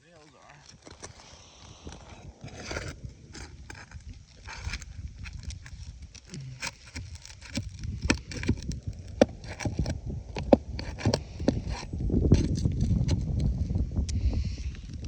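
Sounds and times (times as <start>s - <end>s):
low rumble: 1.2s - 15.0s
hand tool prying shingles: 2.4s - 13.3s.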